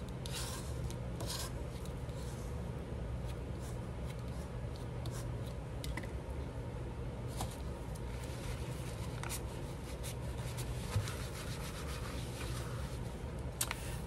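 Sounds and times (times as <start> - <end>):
steady low hum: 0.0 - 14.0
paper rubbing and rustling: 8.2 - 13.1.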